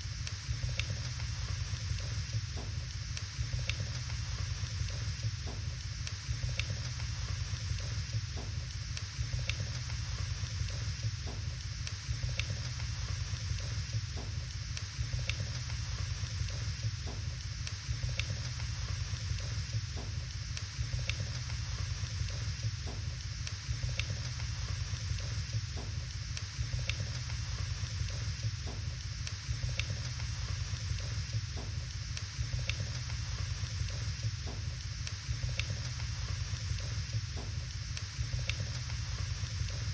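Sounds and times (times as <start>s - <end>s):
wood fire hissing: 0.0s - 39.9s
fire crackles and pops: 0.2s - 39.9s.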